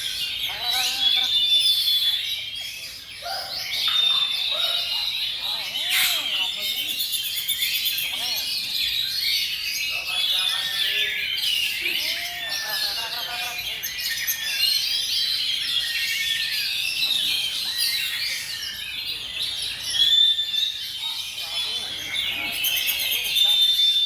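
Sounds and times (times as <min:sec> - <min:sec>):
chorus of songbirds: 0:00.0 - 0:24.0.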